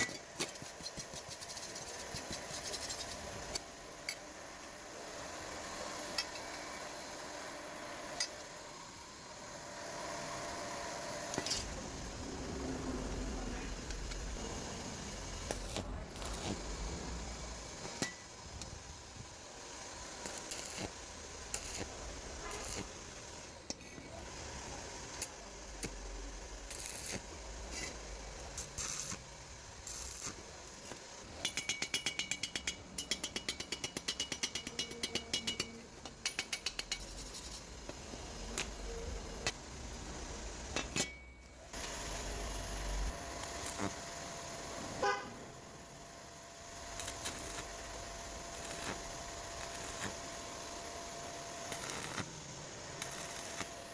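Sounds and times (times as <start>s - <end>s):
metal tools clinking: 40.8s - 41.5s.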